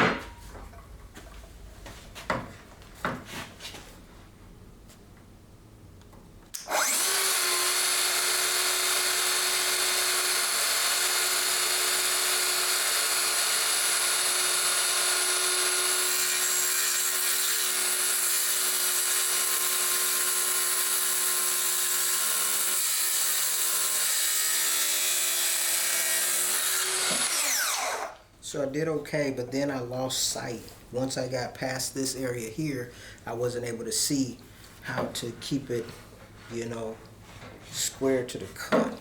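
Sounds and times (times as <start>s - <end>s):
circular saw cutting wood: 6.6s - 28.2s.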